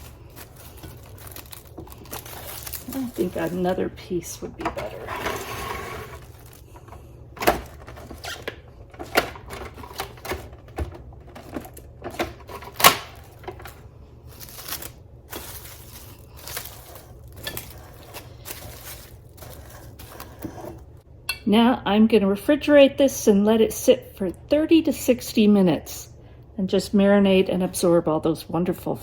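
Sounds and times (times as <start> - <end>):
plastic cling wrap crinkling: 0.0 - 21.0.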